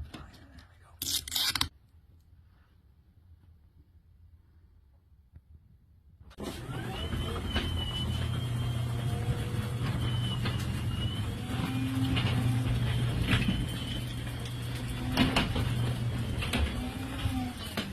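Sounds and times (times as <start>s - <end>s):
garage door opener motor hum: 6.4s - 17.9s.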